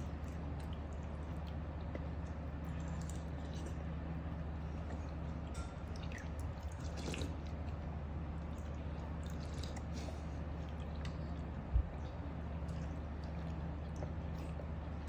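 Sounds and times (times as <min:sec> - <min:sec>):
steady low hum: 0:00.0 - 0:15.0
baby eating wet clicks: 0:00.1 - 0:15.0.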